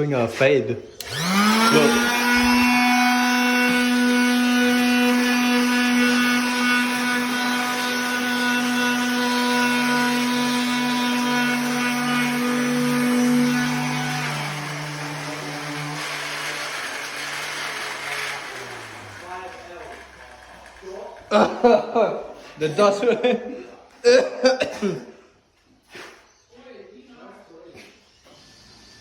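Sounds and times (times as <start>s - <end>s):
electric sander running: 1.0s - 21.5s.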